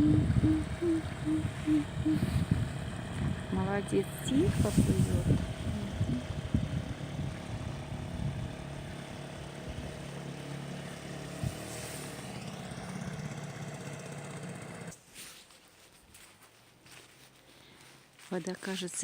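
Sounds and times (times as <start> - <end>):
motorboat engine running: 0.0 - 15.0.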